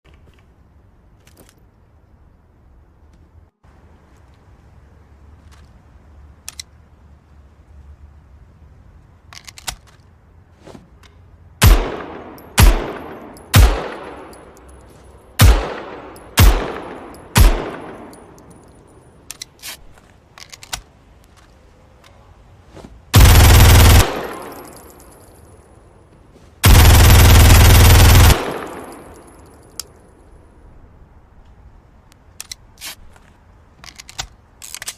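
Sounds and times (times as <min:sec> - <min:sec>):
gunshots with echoing tail: 0:11.6 - 0:14.4, 0:15.4 - 0:18.2, 0:23.2 - 0:24.8, 0:26.6 - 0:29.3
automatic gunfire bursts: 0:23.2 - 0:24.6, 0:26.6 - 0:28.9.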